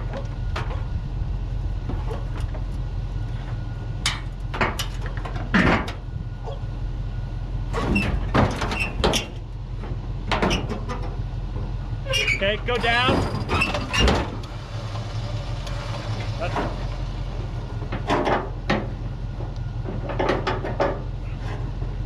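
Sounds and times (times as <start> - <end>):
engine running: 0.0 - 22.0
metal clanks and knocks: 4.0 - 6.0, 7.7 - 22.0.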